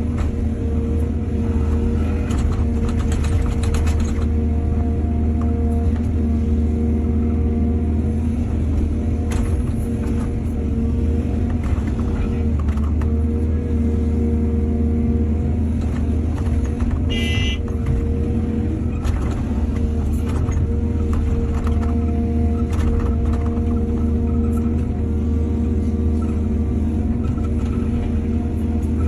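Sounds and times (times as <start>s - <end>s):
diesel engine droning: 0.0s - 29.0s
machine knocks and clanks: 2.2s - 4.4s.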